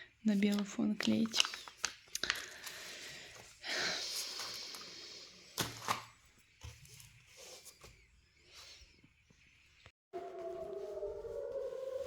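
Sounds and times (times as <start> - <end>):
plastic packaging rustling: 0.4 - 2.9.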